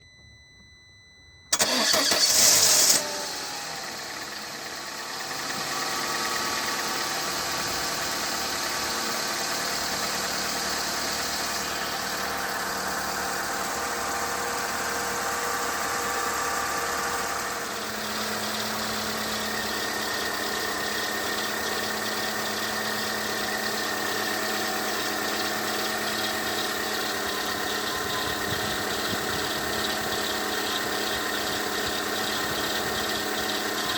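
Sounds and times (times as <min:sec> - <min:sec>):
car engine idling: 0:01.5 - 0:33.9
car engine starting: 0:01.5 - 0:33.9.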